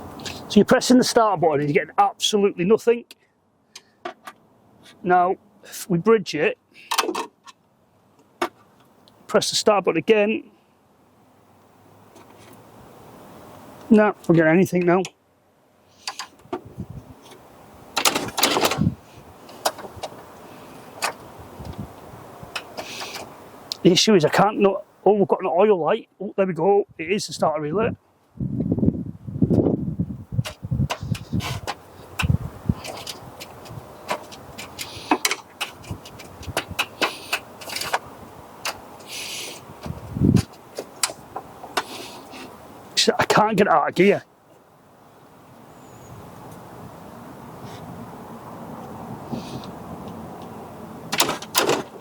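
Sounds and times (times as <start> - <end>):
sharp clicks and knocks: 18.0 - 18.9, 19.5 - 20.3, 30.4 - 38.9, 39.8 - 41.9, 51.1 - 52.0
scraping clatter: 32.8 - 38.8
short hiss: 39.0 - 39.7, 41.8 - 42.6.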